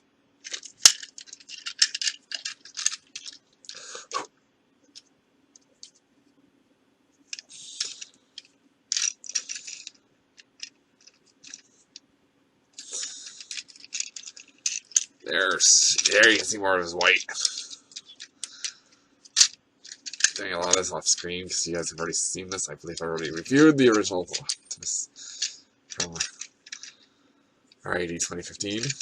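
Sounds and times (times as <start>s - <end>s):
plastic toy parts clicking and rattling: 0.4s - 3.8s, 7.3s - 11.8s, 12.8s - 21.3s, 21.9s - 27.0s, 28.5s - 29.0s.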